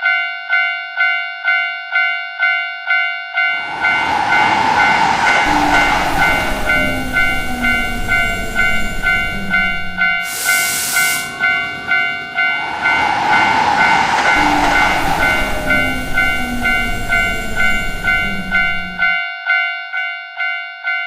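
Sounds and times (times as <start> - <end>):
level crossing bell ringing: 0.0 - 21.0
train passing: 3.4 - 19.2
hissing air burst: 3.6 - 19.0.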